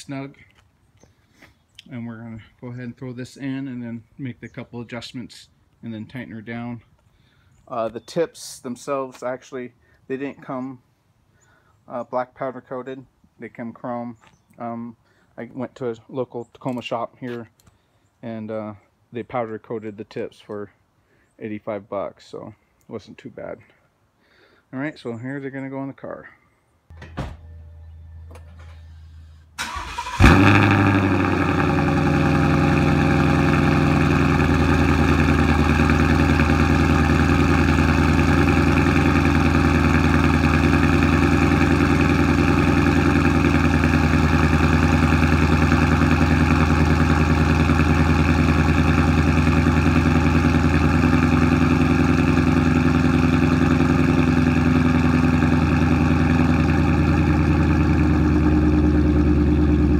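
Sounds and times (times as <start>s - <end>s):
car engine starting and idling: 26.9s - 59.9s.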